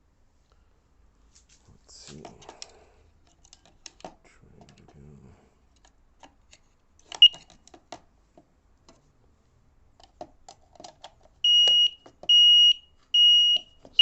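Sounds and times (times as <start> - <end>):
alarm beeping: 11.5 - 13.7
alarm chirp: 11.5 - 13.8.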